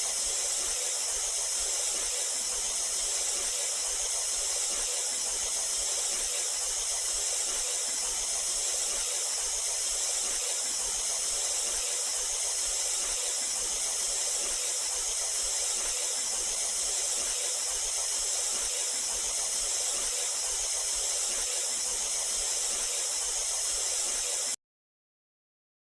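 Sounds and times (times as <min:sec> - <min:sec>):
steam hissing: 0:00.0 - 0:24.6.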